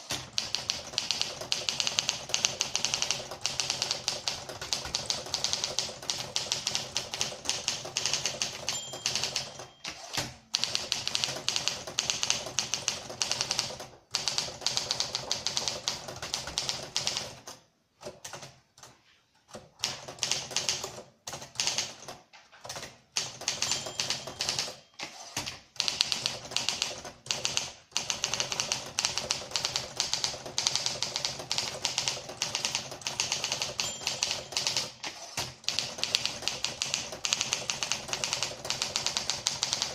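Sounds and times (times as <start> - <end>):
typewriter bell ring: 7.8 - 13.6, 23.4 - 25.4, 31.9 - 39.9
manual typewriter key strikes: 22.7 - 39.9.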